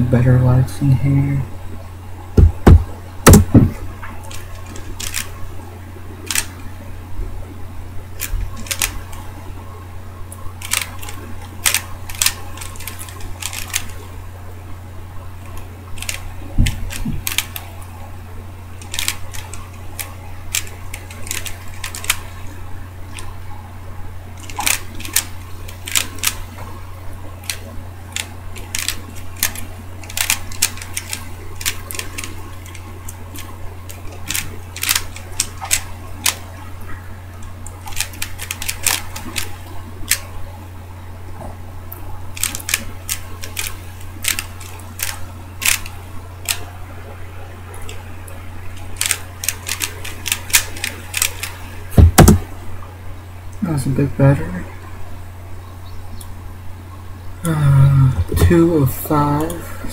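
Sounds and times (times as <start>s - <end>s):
puzzle cube plastic clicks: 4.3s - 5.3s, 6.3s - 6.5s, 8.2s - 9.2s, 10.6s - 14.0s, 18.8s - 22.3s, 28.2s - 32.8s, 33.4s - 36.4s.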